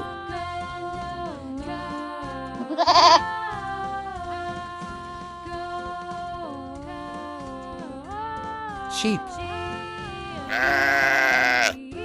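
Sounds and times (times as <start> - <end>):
instrumental background music: 0.0 - 12.0
goat bleating: 2.6 - 3.3, 9.8 - 11.8.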